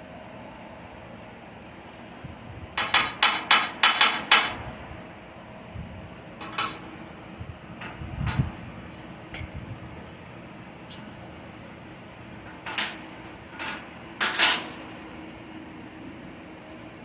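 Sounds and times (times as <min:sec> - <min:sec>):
hammer striking metal: 0:02.8 - 0:04.6.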